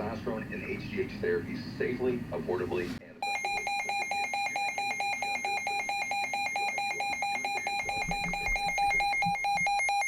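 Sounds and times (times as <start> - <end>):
weather alert radio beeping: 3.2 - 10.0.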